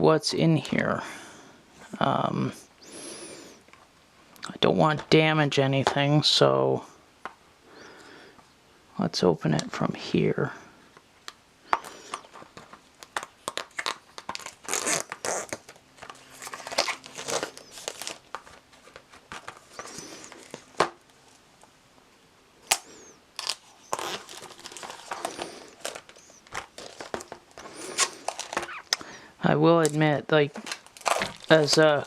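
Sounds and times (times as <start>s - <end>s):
packaging tearing and crinkling: 11.9s - 21.0s, 22.6s - 29.1s, 29.8s - 32.0s.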